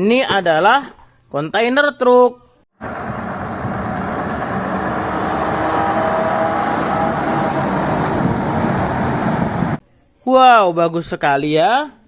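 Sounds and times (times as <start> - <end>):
truck engine and road noise: 2.8 - 9.8.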